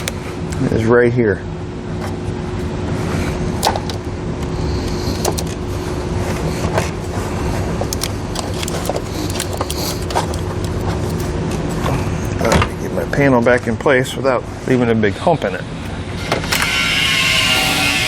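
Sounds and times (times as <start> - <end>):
steady background hum: 0.0 - 18.0
plastic parts clicking: 5.1 - 5.6, 7.8 - 11.3.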